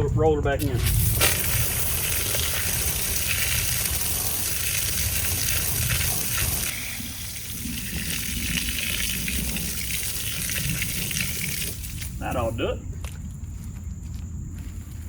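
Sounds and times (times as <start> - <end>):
water hissing on hot metal: 0.6 - 12.3.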